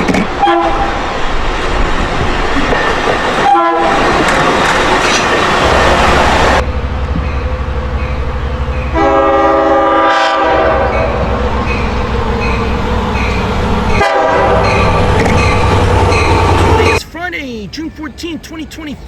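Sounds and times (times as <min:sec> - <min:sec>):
train rumbling past: 0:00.0 - 0:17.0
train horn blasts: 0:00.4 - 0:00.9, 0:03.4 - 0:04.0, 0:08.9 - 0:11.3, 0:13.9 - 0:14.9.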